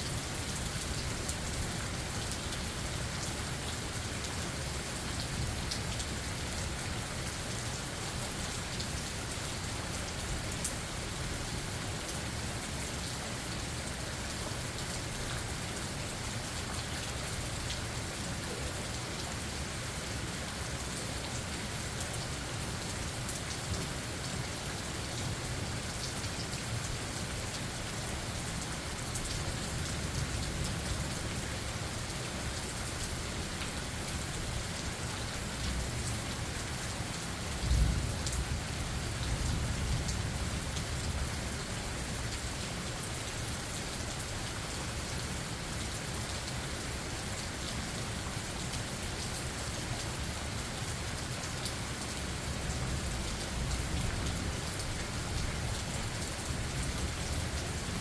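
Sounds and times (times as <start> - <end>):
steady rain falling: 0.0 - 58.0
low rumble of thunder: 37.6 - 41.4.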